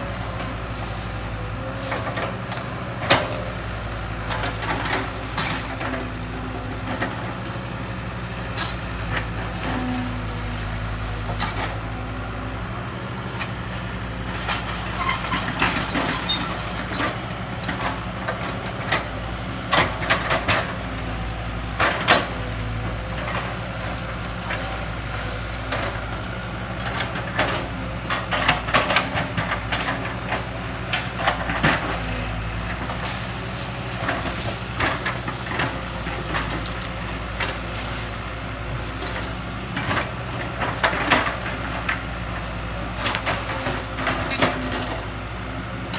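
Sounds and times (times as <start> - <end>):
excavator diesel engine running: 0.0 - 45.9
clanks and scrapes: 11.3 - 12.0, 14.3 - 19.1.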